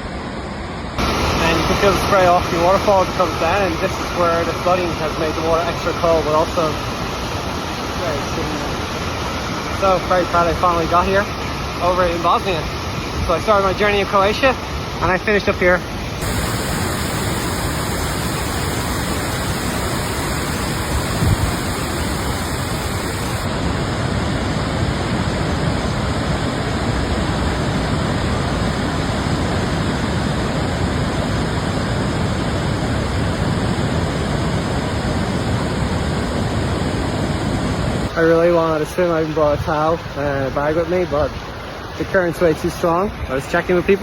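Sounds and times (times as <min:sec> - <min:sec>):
waterfall rushing: 0:01.0 - 0:32.9.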